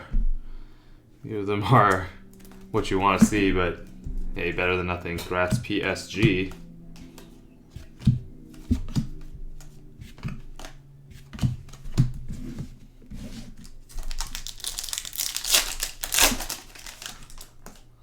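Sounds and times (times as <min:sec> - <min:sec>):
cards tapped on a table: 0:02.3 - 0:04.3, 0:05.2 - 0:12.6
card pack wrapper tearing: 0:13.9 - 0:17.9.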